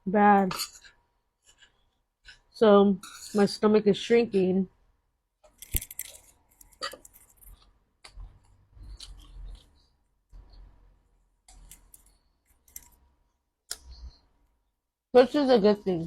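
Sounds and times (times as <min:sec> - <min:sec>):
mouth clicks and smacks eating: 0:06.0 - 0:10.5.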